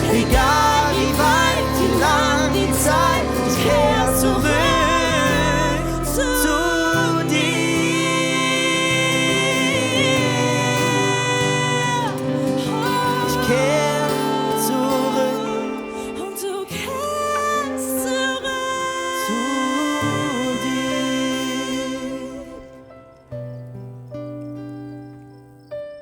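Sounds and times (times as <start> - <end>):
bass and sustained chords: 0.0 - 18.5
voice singing long held notes: 0.0 - 22.9.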